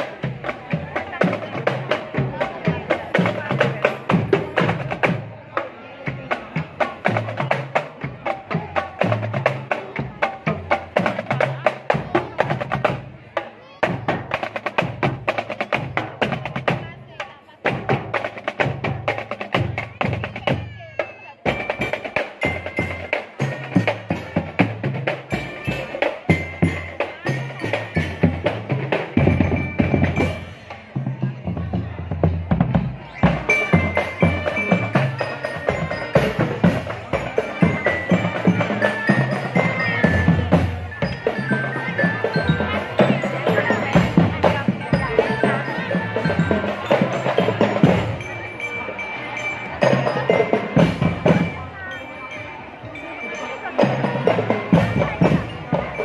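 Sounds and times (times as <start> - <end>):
marching drums fast rhythm: 0.0 - 56.0
bell lyre melody: 25.2 - 31.1, 33.2 - 56.0.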